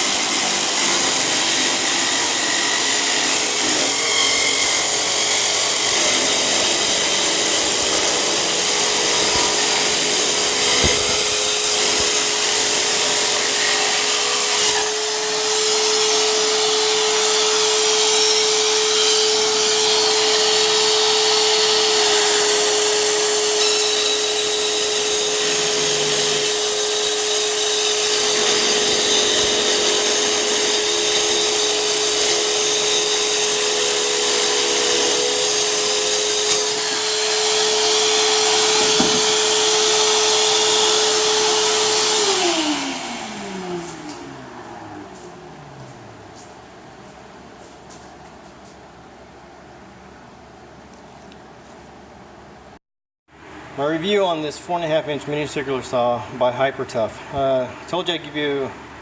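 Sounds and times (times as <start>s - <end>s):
circular saw motor whine: 0.0s - 46.5s.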